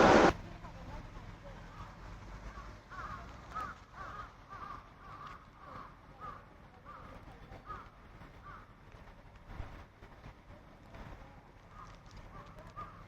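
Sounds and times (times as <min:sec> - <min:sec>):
birds cawing: 0:02.9 - 0:07.0.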